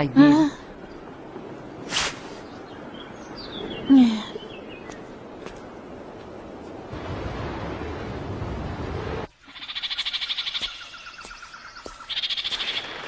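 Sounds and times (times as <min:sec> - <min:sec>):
wind blowing: 0:00.0 - 0:13.0.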